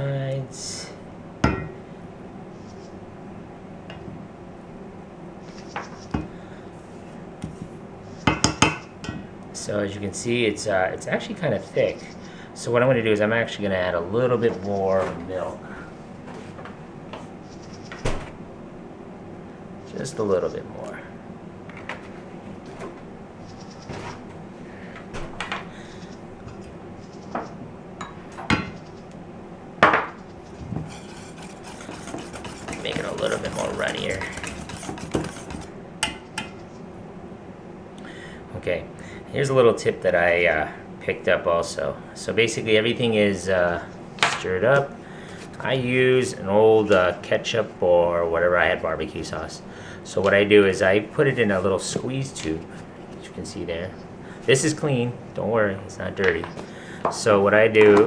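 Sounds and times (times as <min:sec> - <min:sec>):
spoon stirring batter in bowl: 0:30.8 - 0:36.2.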